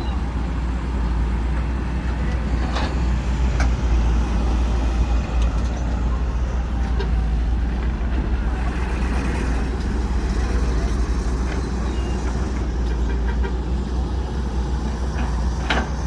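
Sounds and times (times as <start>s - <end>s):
heavy diesel machinery running: 0.0s - 16.0s.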